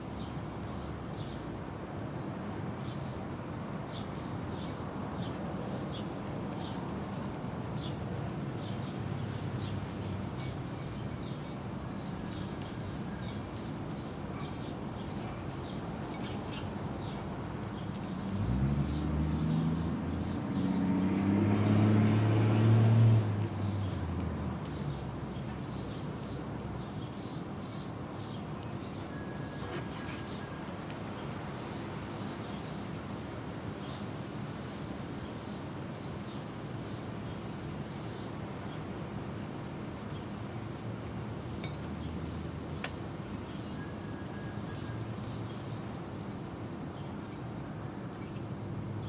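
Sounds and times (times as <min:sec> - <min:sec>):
motor vehicle passing: 0:18.1 - 0:24.2.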